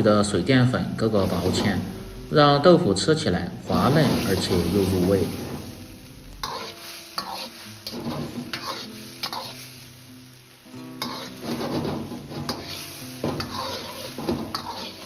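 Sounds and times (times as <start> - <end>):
sauce sizzling: 0.0 - 15.0
ladle scraping a wok: 1.1 - 2.2, 3.7 - 10.1, 10.7 - 15.0.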